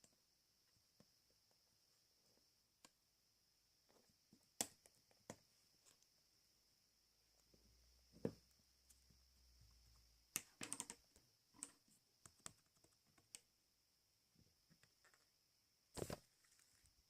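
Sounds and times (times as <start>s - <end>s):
faint steady high whine: 0.0s - 17.0s
faint clicks and taps: 7.4s - 13.5s.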